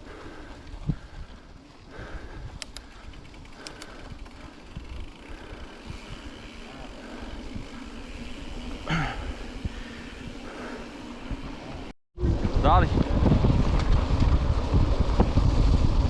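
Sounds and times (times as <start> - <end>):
bike tyres rumbling on dirt: 0.0 - 16.0
sharp clicks: 2.6 - 4.4.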